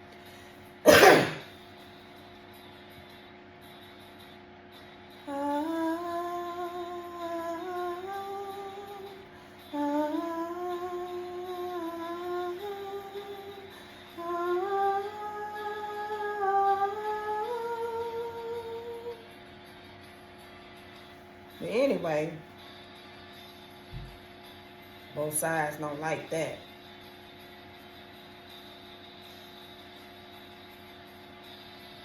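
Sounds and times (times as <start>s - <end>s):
person humming a slow melody: 5.3s - 19.3s.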